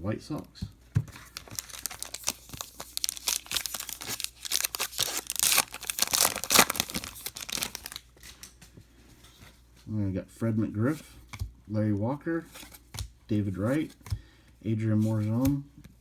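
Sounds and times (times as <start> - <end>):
wrapper tearing and crinkling: 1.2 - 8.1.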